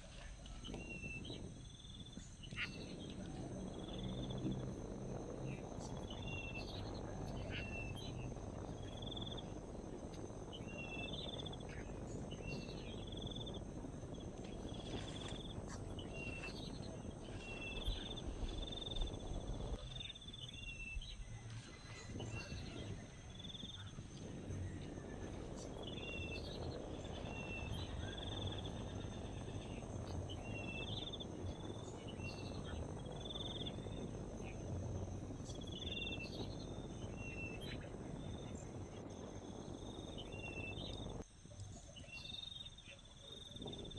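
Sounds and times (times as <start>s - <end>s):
high insect hum: 0.0s - 43.9s
low background rumble: 0.0s - 43.9s.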